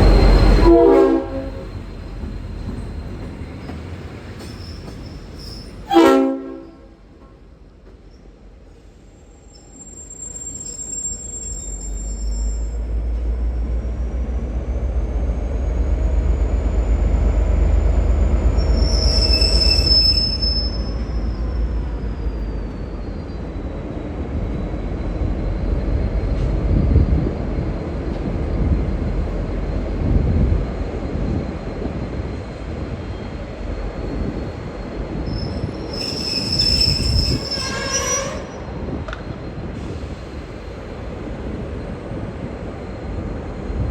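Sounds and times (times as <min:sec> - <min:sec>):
high wheel squeal: 0:00.0 - 0:06.0, 0:09.3 - 0:13.3, 0:16.3 - 0:26.5, 0:31.7 - 0:40.7
diesel locomotive engine rumble: 0:00.0 - 0:43.9.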